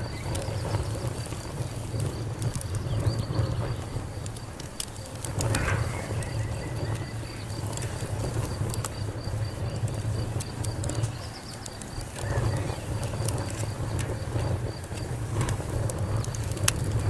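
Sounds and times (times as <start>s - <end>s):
fire crackling: 0.0s - 17.0s
low rumble of burning: 0.0s - 17.0s
faint high pulsing chirp: 5.6s - 10.0s.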